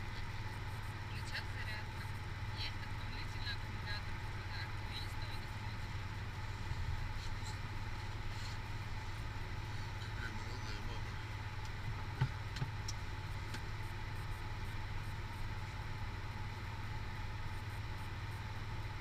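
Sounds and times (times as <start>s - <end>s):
car engine humming: 0.0s - 19.0s.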